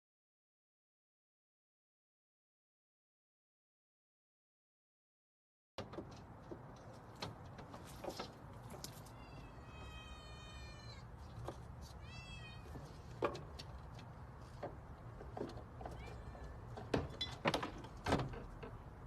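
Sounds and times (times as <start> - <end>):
light taps and knocks: 5.8 - 9.2, 12.7 - 19.0
cat meowing: 9.0 - 11.1, 11.9 - 12.9, 15.9 - 16.5.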